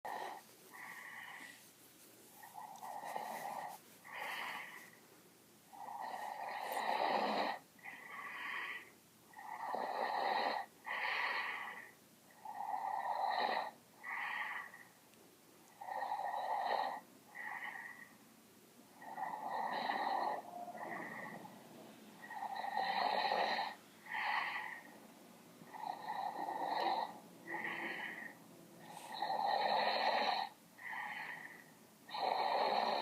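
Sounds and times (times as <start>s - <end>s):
person snoring loudly: 5.8s - 8.7s, 19.0s - 21.4s, 22.2s - 24.8s, 29.1s - 31.4s, 32.1s - 33.0s.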